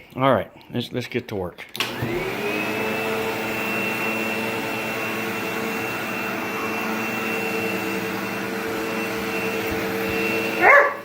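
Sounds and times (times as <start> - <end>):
vacuum cleaner running: 1.8 - 11.0.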